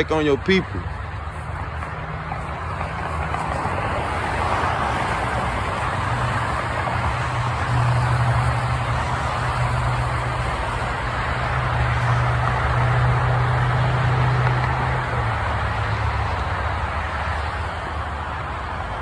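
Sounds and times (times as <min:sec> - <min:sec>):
road or wind noise hiss: 0:00.0 - 0:19.0
vehicle engine hum: 0:00.0 - 0:19.0.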